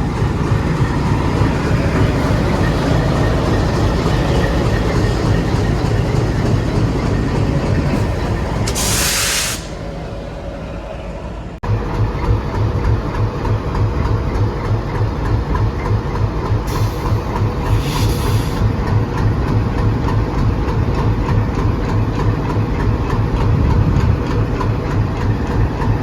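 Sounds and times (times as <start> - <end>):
diesel locomotive idling: 0.0 - 26.0
air hiss: 8.6 - 9.8.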